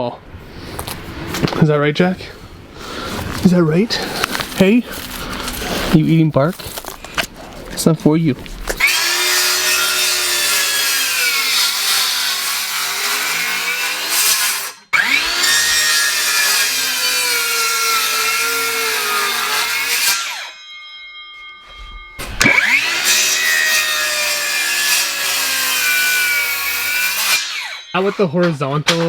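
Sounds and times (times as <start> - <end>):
power saw cutting wood: 8.8 - 20.6, 22.2 - 29.0.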